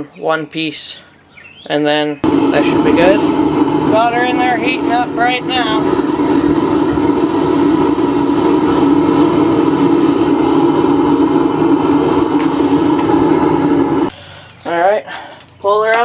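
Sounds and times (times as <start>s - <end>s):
forge roaring steadily: 2.2s - 14.2s.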